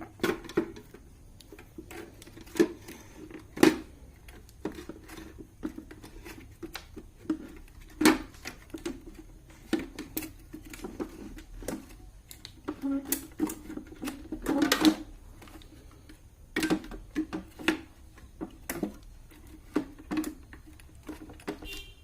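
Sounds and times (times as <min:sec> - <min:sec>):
clicks and knocks of plastic and metal: 0:00.0 - 0:22.0.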